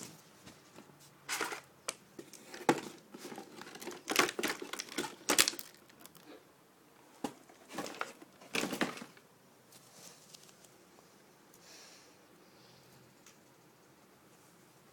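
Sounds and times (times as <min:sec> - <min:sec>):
plastic packaging rustling: 0:00.6 - 0:06.3, 0:07.2 - 0:09.2
plastic toy pieces clicking: 0:03.7 - 0:06.2.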